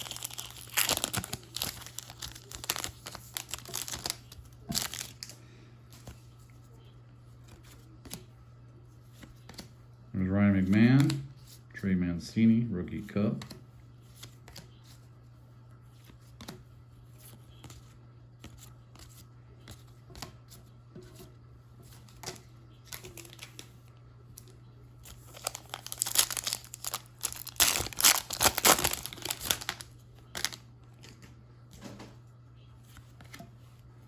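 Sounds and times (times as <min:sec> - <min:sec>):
foil wrapper tearing and crinkling: 0:00.0 - 0:05.3, 0:22.9 - 0:23.7, 0:25.1 - 0:30.6
low steady hum: 0:00.0 - 0:34.0.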